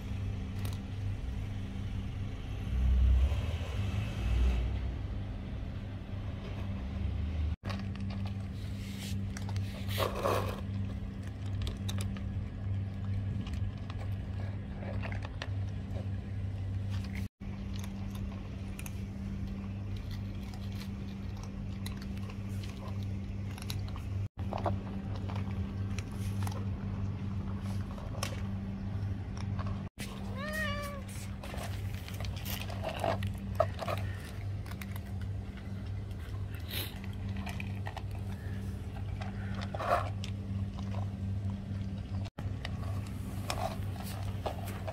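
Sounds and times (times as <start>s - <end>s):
steady low hum: 0.0s - 44.9s
cat meowing: 30.1s - 31.1s.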